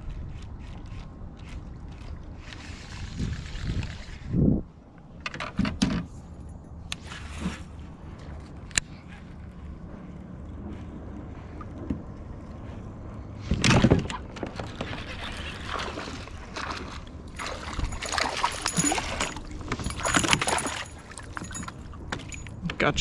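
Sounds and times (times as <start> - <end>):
water sloshing against a boat: 0.0 - 23.0
loud splash: 15.0 - 21.6.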